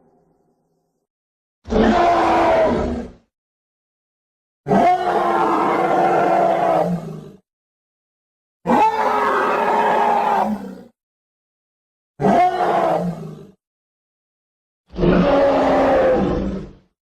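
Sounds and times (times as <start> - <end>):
bear roaring: 1.7 - 3.2, 4.7 - 7.4, 8.7 - 10.9, 12.2 - 13.6, 14.9 - 16.8.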